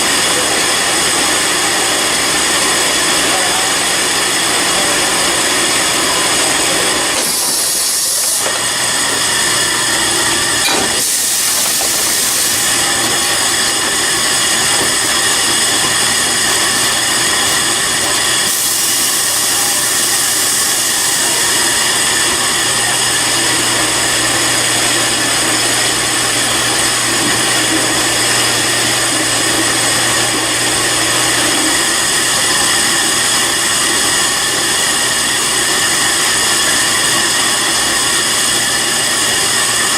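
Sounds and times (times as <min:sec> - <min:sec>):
industrial machinery humming: 0:00.0 - 0:39.9
loud hissing bursts: 0:07.2 - 0:08.6, 0:10.9 - 0:14.7, 0:15.4 - 0:22.2.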